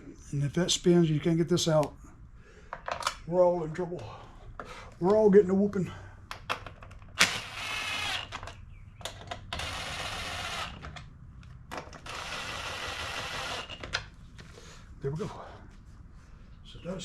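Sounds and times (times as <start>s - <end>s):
cordless nut driver running: 7.2s - 8.6s, 9.5s - 11.1s, 12.0s - 14.0s.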